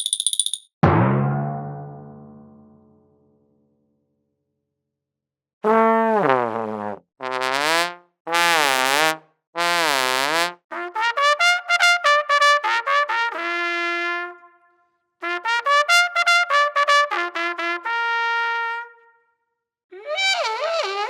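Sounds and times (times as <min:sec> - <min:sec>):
trumpet fanfare: 0:09.6 - 0:14.5, 0:15.2 - 0:19.0.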